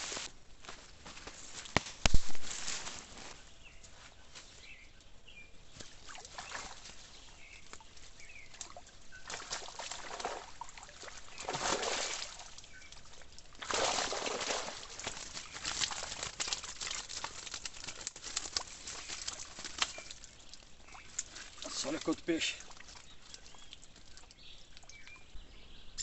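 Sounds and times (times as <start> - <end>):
water splashing and sloshing: 5.7 - 25.4.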